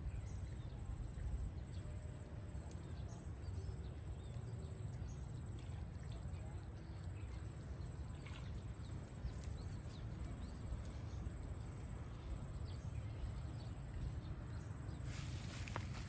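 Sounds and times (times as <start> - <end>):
rustling hiss: 14.9 - 16.0.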